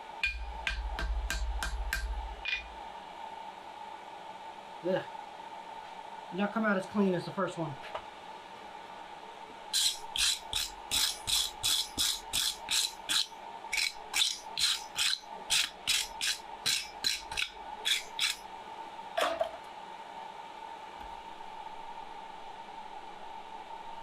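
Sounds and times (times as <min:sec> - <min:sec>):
steady hum: 0:00.0 - 0:24.0
hammer strokes on hot steel: 0:00.2 - 0:02.7, 0:09.8 - 0:18.4.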